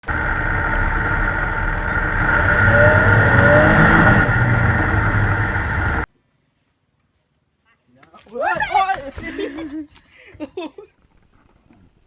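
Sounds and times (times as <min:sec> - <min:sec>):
engine running steadily: 0:00.0 - 0:06.1.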